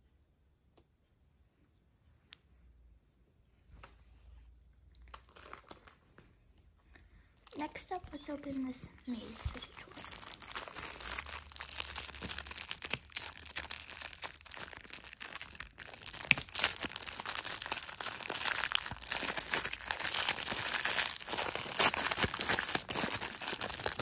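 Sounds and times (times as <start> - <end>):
plastic packaging crinkling: 5.1 - 6.0, 7.5 - 24.0.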